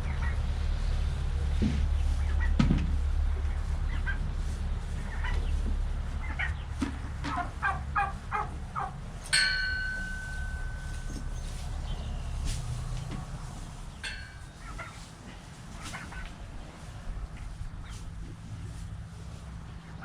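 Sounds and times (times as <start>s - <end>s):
poultry clucking and calling: 3.3s - 20.0s
metal clang ringing: 9.3s - 11.9s, 14.0s - 14.8s.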